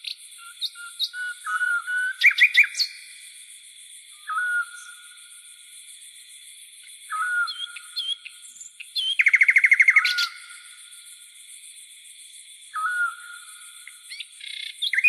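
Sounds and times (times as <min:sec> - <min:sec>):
bird chirps: 0:00.0 - 0:03.2, 0:04.2 - 0:05.2, 0:07.0 - 0:10.7, 0:12.7 - 0:15.0
insects droning: 0:00.0 - 0:15.0
birds whistling: 0:00.4 - 0:03.0, 0:04.2 - 0:05.0, 0:07.1 - 0:10.4, 0:12.8 - 0:13.5, 0:14.1 - 0:15.0.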